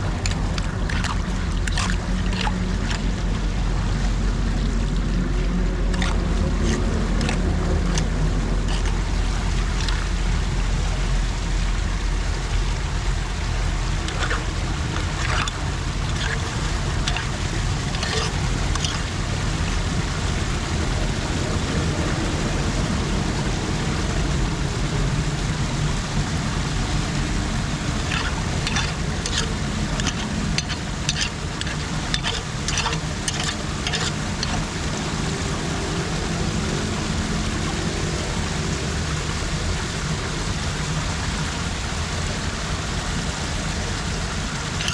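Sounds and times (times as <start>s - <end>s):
floodwater rushing: 0.0s - 44.9s
debris clicking and knocking: 28.1s - 34.6s.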